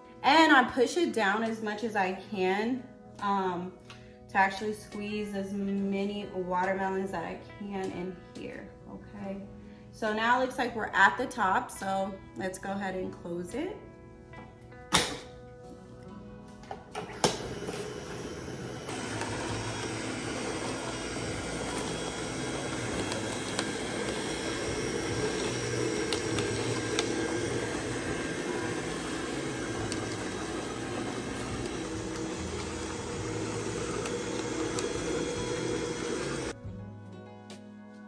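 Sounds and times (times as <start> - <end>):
juicer motor humming: 16.7 - 36.6.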